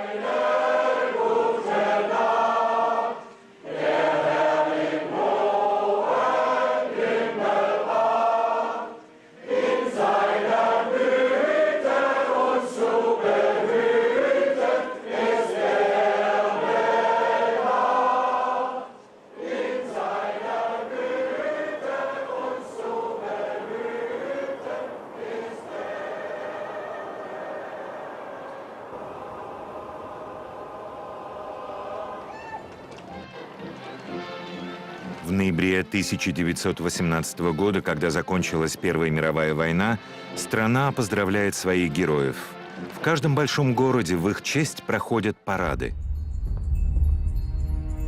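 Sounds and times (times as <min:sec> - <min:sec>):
men's choir singing: 0:00.0 - 0:32.4.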